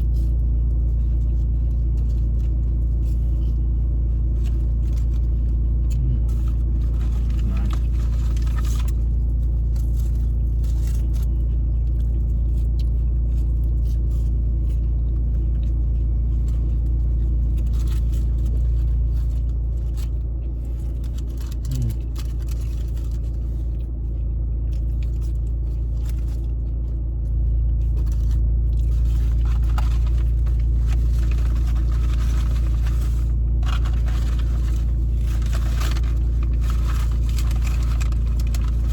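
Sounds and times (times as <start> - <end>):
low mechanical rumble: 0.0 - 38.9
rustling: 24.9 - 38.9.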